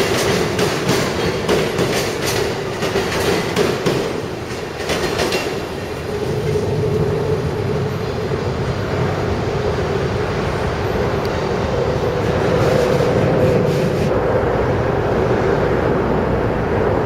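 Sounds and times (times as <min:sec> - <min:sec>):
train wheels clicking over rail joints: 0:00.0 - 0:06.8
train rolling rumble: 0:00.0 - 0:17.0.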